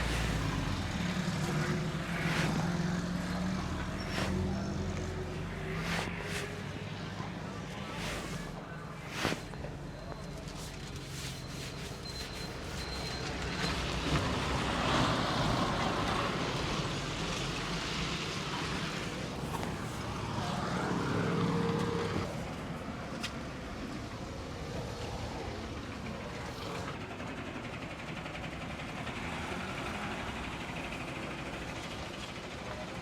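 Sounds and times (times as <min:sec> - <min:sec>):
engine hum: 0:00.0 - 0:33.0
vehicles going by: 0:00.0 - 0:33.0.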